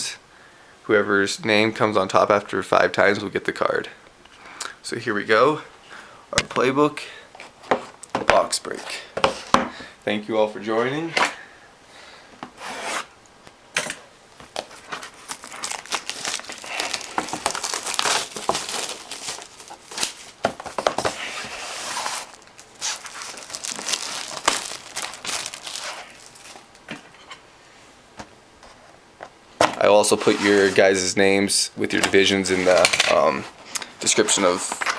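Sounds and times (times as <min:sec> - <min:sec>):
plastic wrap crinkling and tearing: 0:14.4 - 0:27.0.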